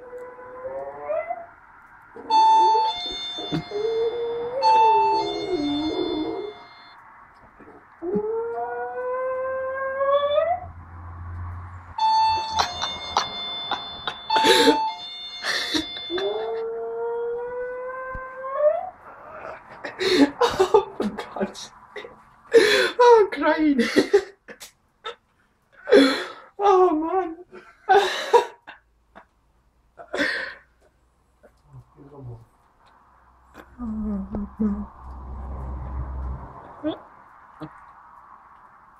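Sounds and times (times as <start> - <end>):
dog howling: 2.2 - 6.9, 16.0 - 19.0
doorbell chime ringing: 2.2 - 7.0, 12.0 - 16.6.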